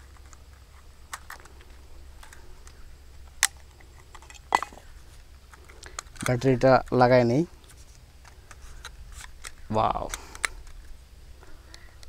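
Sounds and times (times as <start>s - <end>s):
plastic clicks of drone: 8.2s - 10.9s.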